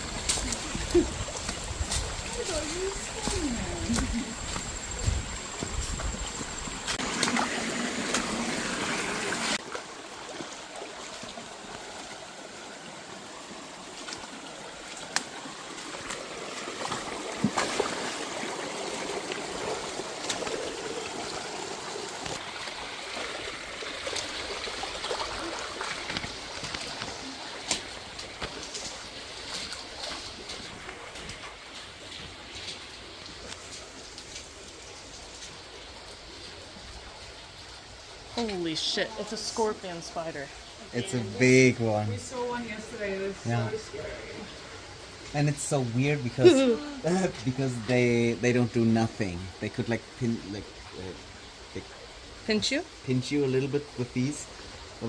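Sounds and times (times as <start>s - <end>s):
water drips: 0.0s - 41.3s
water trickling and gurgling: 0.0s - 55.0s.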